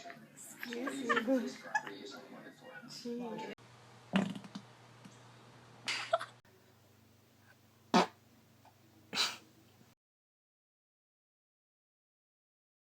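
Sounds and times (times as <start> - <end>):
short farts: 7.9 - 8.2.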